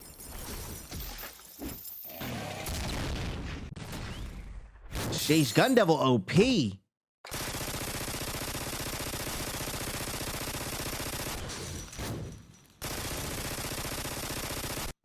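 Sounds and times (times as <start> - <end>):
rapid automatic gunfire: 7.3 - 11.6, 12.8 - 15.0.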